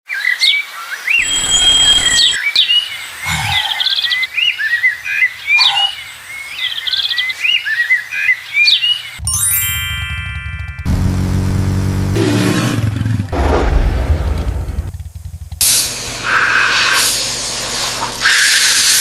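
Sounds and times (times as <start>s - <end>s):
songbirds chirping: 0.1s - 9.2s
brief rushing noise: 13.4s - 17.0s.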